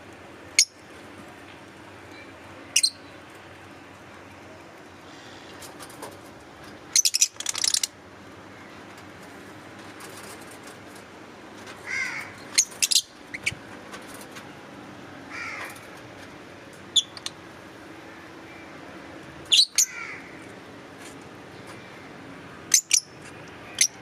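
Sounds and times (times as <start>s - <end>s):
lovebirds chirping: 2.1s - 3.2s, 6.9s - 7.9s, 12.1s - 13.6s, 22.7s - 24.0s.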